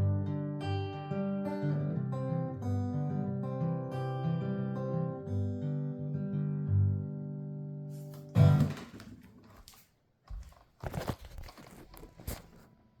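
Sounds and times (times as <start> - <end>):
rustling and handling noises: 8.0 - 12.9.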